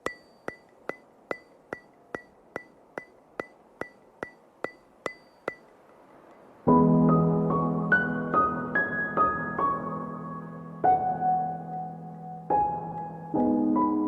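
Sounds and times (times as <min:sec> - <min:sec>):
sharp ringing ticks: 0:00.0 - 0:06.5
soft piano music: 0:06.6 - 0:14.0.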